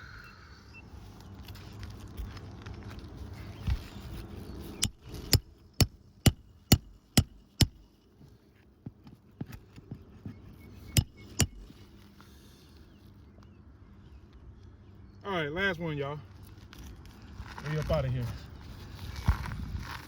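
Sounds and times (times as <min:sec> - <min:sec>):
hammer driving nails into shingle: 0:04.8 - 0:07.9, 0:10.9 - 0:11.8.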